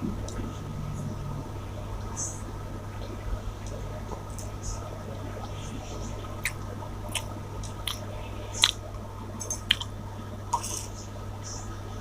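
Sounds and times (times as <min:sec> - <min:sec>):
steady low hum: 0:00.0 - 0:12.0
wet chewing: 0:06.3 - 0:10.0
lip smacks: 0:06.4 - 0:08.8, 0:09.7 - 0:09.9.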